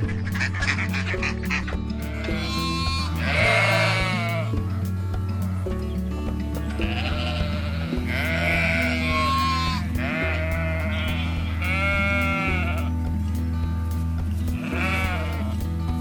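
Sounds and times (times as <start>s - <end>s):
sheep bleating: 0.0s - 4.6s, 6.7s - 13.1s, 14.5s - 15.8s.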